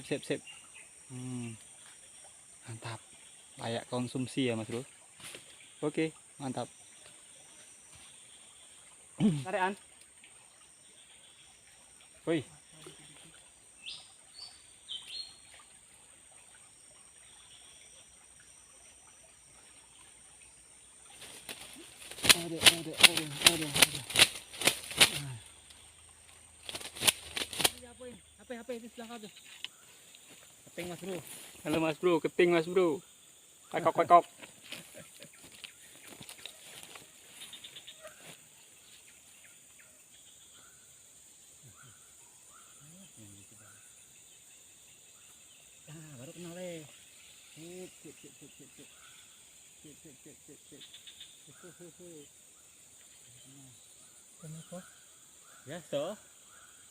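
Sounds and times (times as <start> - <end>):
small bird chirping: 10.8 - 15.7, 21.1 - 40.9, 41.6 - 56.9
high-pitched insect drone: 45.5 - 56.9.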